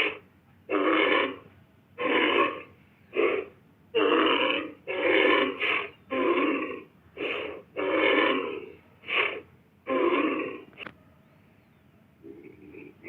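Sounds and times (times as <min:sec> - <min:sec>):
short breathy animal calls: 0:02.0 - 0:10.8.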